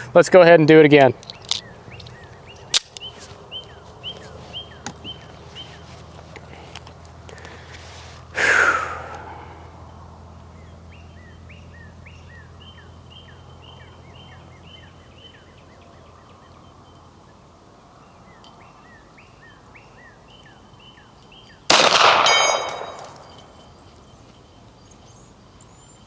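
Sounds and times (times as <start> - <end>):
bird chirping: 0.9 - 6.6, 9.0 - 21.7, 22.3 - 26.0
pistol shot echoing: 21.7 - 23.3
steel target clanging: 21.7 - 23.8.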